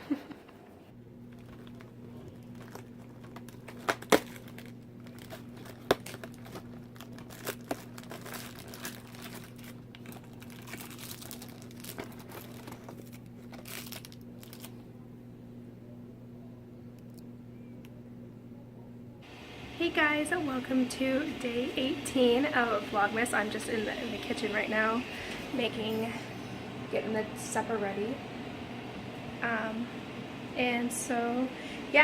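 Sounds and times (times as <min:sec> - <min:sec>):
low hum: 0:00.0 - 0:32.0
wrapper crinkling and tearing: 0:01.3 - 0:14.8.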